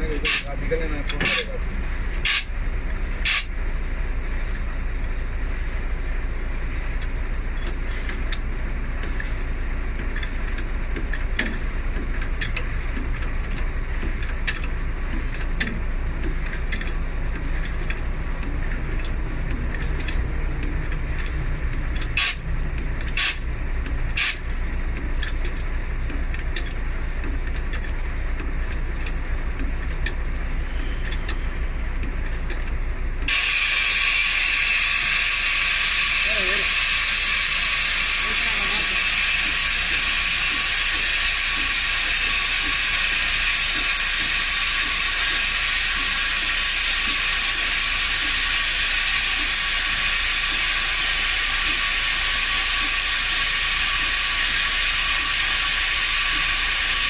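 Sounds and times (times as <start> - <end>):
diesel vehicle idling: 0.0 - 57.0
tools clicking and knocking: 10.0 - 33.4.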